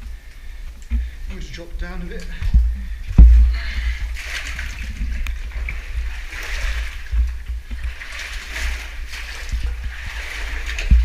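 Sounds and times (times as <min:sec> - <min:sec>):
water sloshing and splashing: 0:00.0 - 0:11.0.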